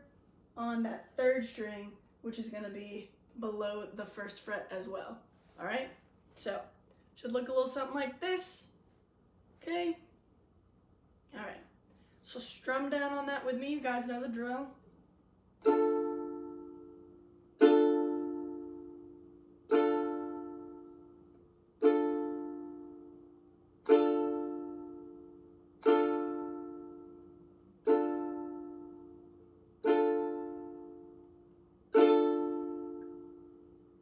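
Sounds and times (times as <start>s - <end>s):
ukulele chord strums: 15.6s - 34.0s.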